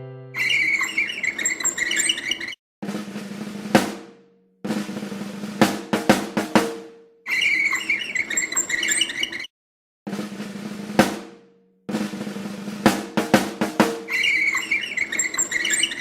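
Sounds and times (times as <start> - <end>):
snare drum rolls: 2.8 - 4.1, 4.7 - 6.9, 10.1 - 14.2
loud drum hit: 2.9 - 4.0, 11.9 - 14.1.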